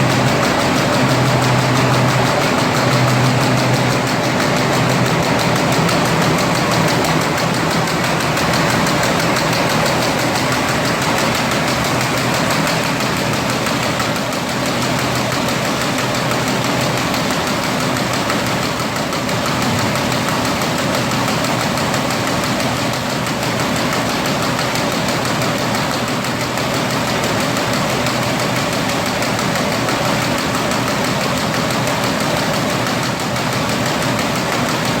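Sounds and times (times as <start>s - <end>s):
machine rattling rapidly: 0.0s - 35.0s.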